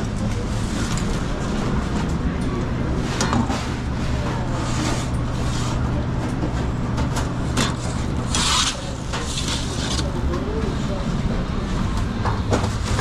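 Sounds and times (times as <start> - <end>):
kitchen machinery hum: 0.0 - 13.0
clicks and clatter of work: 11.9 - 13.0.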